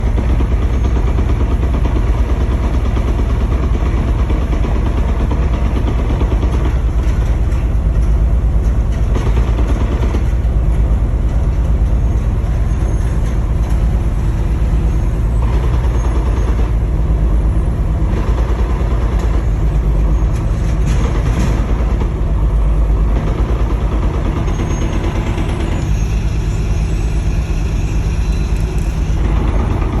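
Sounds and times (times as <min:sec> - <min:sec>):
engine knock: 0:00.0 - 0:17.0, 0:17.9 - 0:26.0, 0:29.0 - 0:30.0
car engine running: 0:28.2 - 0:30.0.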